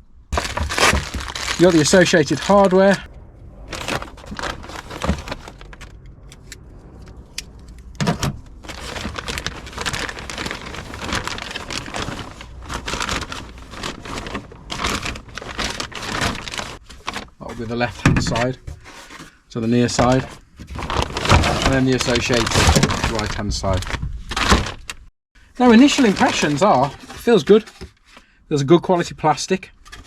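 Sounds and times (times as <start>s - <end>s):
plastic packaging crinkling: 0.4s - 3.1s, 3.7s - 5.9s, 8.6s - 19.2s, 19.9s - 25.1s, 25.7s - 27.6s
small parts rattling: 0.4s - 3.1s, 8.6s - 17.6s.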